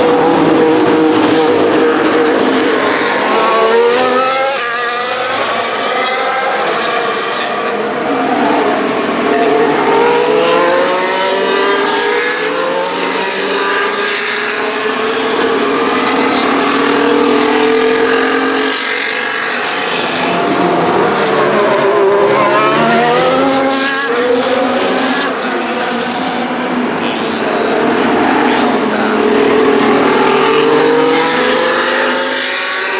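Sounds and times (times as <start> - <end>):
racing cars passing: 0.0 - 32.9.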